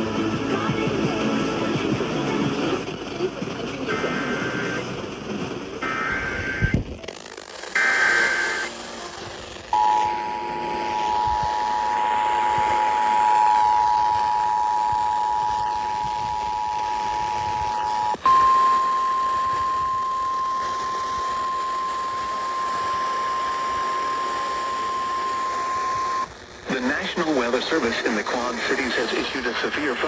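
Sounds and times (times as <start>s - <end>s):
background hiss: 5.9s - 30.0s
steady warning alarm tone: 7.7s - 26.3s
two-tone alert signal: 9.7s - 26.2s.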